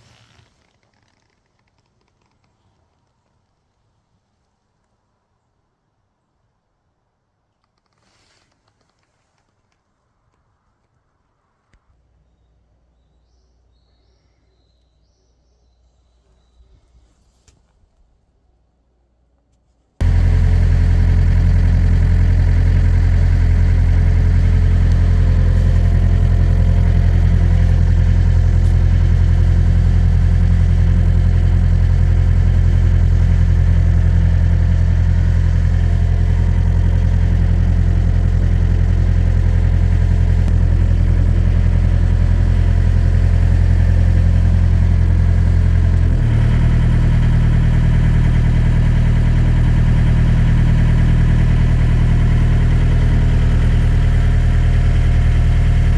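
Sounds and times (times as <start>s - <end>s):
heavy machine engine idling: 20.0s - 55.9s.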